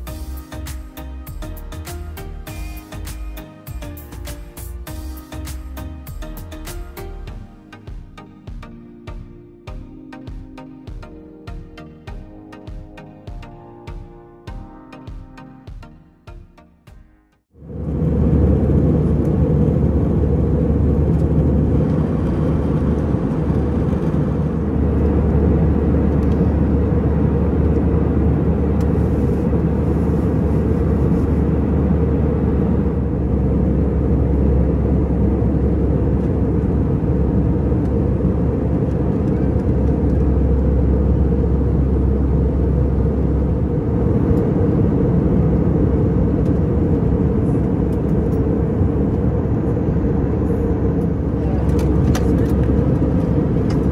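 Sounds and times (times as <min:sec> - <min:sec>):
low hum: 0:17.4 - 0:53.9
aircraft cabin rumble: 0:17.6 - 0:53.9.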